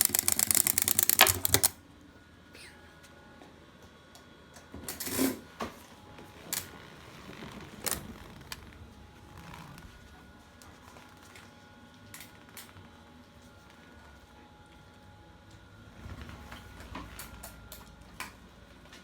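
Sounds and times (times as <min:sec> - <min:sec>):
wind-up toy clicking and clattering: 0:00.0 - 0:01.8.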